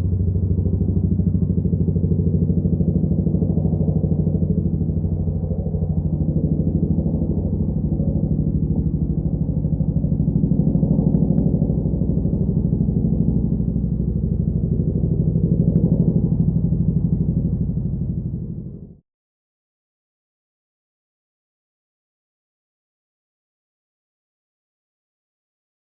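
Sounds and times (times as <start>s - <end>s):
helicopter rotor blades beating: 0.0s - 18.9s.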